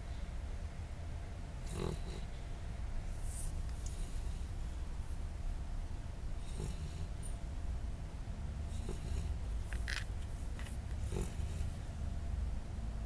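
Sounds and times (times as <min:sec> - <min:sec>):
pet snoring: 0:01.6 - 0:02.3, 0:06.4 - 0:07.2, 0:08.7 - 0:09.4, 0:11.0 - 0:11.8.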